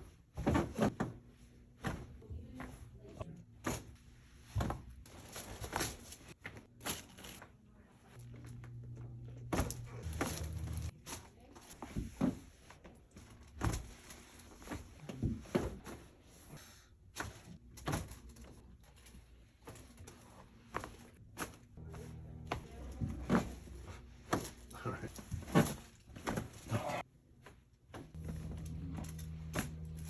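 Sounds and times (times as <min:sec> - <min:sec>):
low steady hum: 0:06.8 - 0:11.8, 0:18.0 - 0:27.0, 0:27.9 - 0:30.0.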